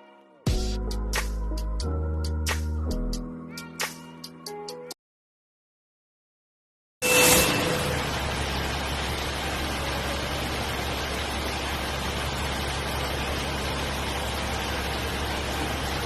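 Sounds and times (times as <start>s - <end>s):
truck engine running: 7.8s - 16.0s.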